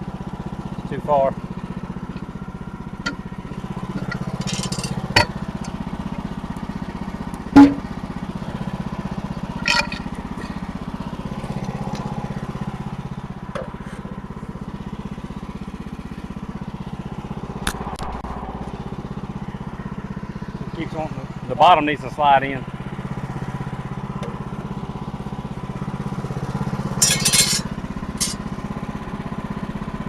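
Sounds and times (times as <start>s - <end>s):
sawmill engine idling: 0.0s - 30.0s
knocks and clanks of metal and wood: 1.6s - 6.2s, 7.5s - 7.9s, 9.6s - 10.6s, 27.0s - 28.5s.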